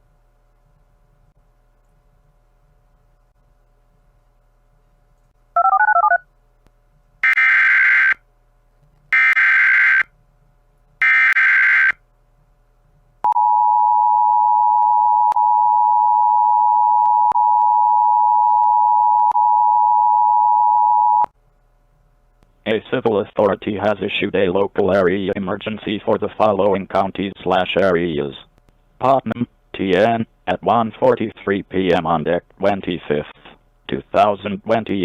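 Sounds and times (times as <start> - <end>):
harsh buzzing data bursts: 9.2 - 10.1, 11.0 - 12.0.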